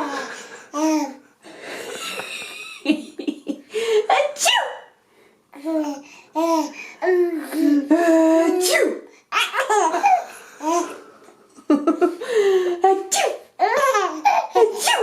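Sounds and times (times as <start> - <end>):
woman sneezing: 4.1 - 4.9, 8.6 - 9.0, 13.1 - 13.5, 14.6 - 15.0
baby laughing: 9.3 - 10.9, 13.6 - 15.0.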